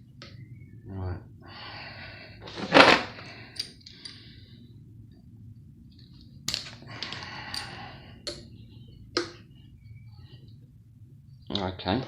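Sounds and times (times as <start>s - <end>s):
tools scraping and rattling: 2.4s - 4.2s.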